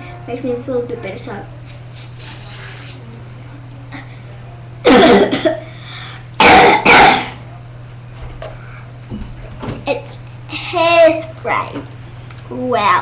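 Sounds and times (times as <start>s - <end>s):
person coughing: 4.8s - 5.6s, 6.4s - 7.4s.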